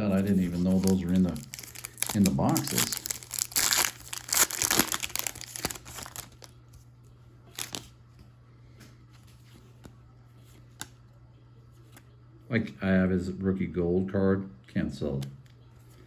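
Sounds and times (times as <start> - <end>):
foil wrapper crinkling and tearing: 0.0 - 6.6, 7.5 - 7.9.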